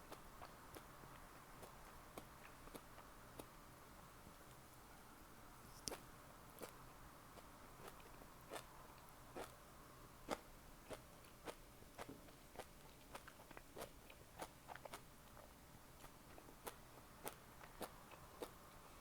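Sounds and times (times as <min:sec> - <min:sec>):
chewing food with wet crunches: 0:00.0 - 0:04.7, 0:05.9 - 0:19.0.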